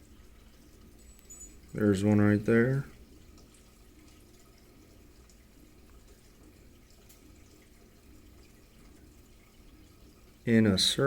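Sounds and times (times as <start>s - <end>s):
aquarium water trickling: 0.0s - 11.0s
tiny water drips: 0.0s - 11.0s.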